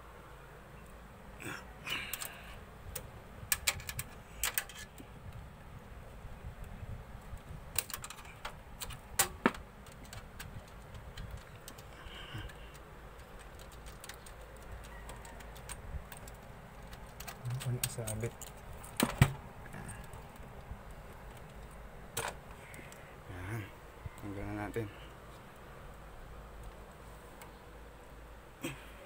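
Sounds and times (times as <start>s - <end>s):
plastic connectors clicking: 7.8s - 14.4s.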